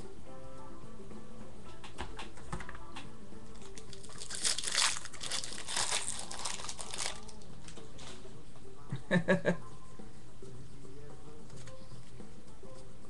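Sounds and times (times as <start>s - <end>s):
plastic wrapper tearing and crinkling: 3.6s - 7.5s.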